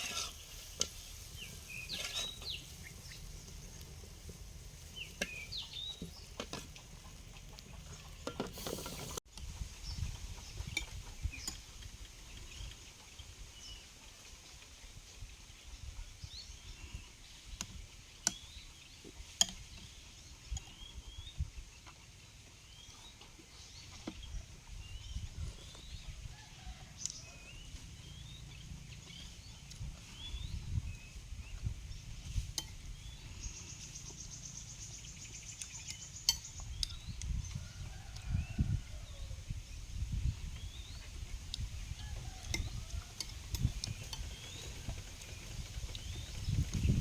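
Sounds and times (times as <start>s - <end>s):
birds chirping: 0.0s - 14.2s, 15.5s - 39.2s, 40.6s - 47.0s.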